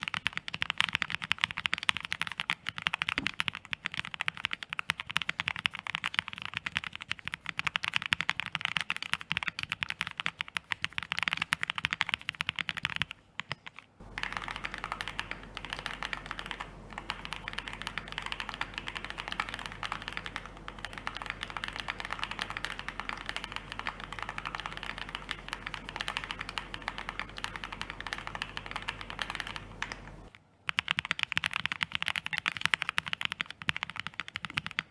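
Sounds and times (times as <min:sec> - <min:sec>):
fast keyboard typing: 0:00.0 - 0:34.9
low steady hum: 0:14.0 - 0:30.6.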